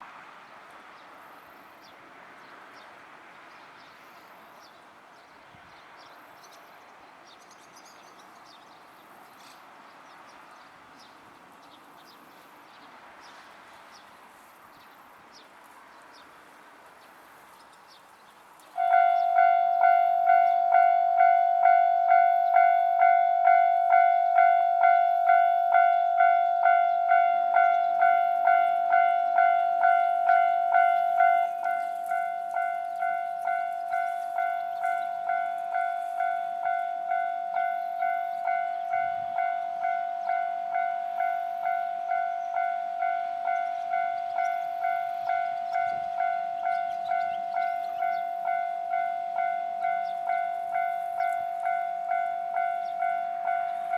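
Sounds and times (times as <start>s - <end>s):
level crossing warning bell dings: 18.8s - 53.9s.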